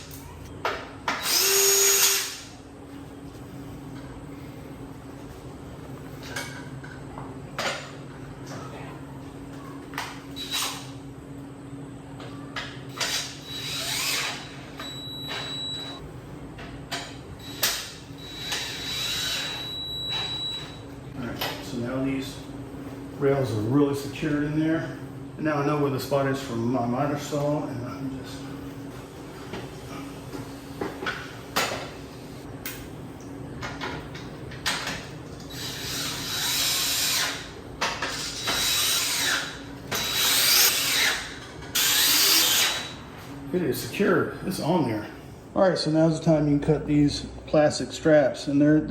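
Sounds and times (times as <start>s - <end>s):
power drill driving screws: 1.2s - 2.5s, 12.9s - 14.6s, 17.4s - 19.6s, 38.2s - 43.0s.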